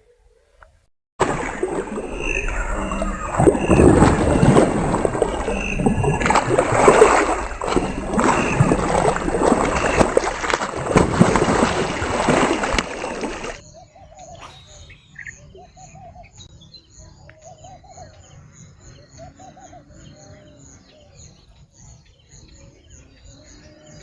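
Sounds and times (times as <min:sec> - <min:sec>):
water splashing and sloshing: 0:01.2 - 0:13.6.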